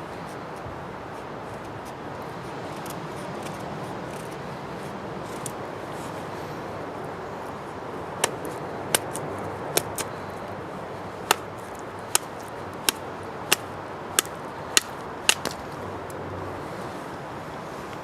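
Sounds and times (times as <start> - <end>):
knife cutting wood cracks: 8.2 - 10.2, 11.2 - 15.9.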